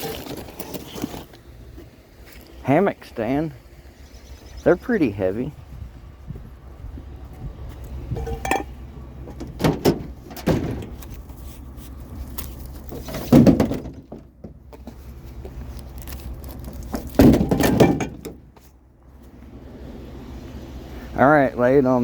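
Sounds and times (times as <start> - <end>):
steady low rumble: 1.9 - 13.0
heavy knocks and thuds: 9.3 - 11.0, 13.0 - 14.9, 17.0 - 18.5.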